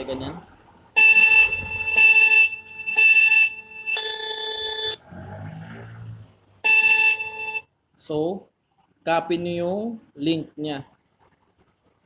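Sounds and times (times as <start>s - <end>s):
electronic alarm beeping: 3.0s - 5.0s.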